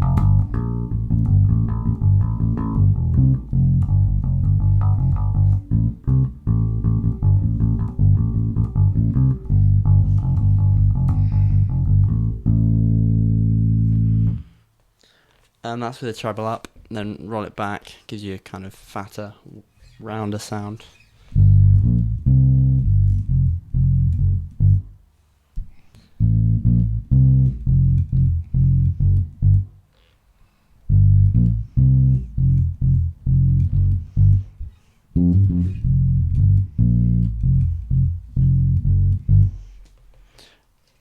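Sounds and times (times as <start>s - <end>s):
plucked bass guitar notes: 0.0s - 14.6s, 21.3s - 25.0s, 26.2s - 29.9s, 30.9s - 39.8s.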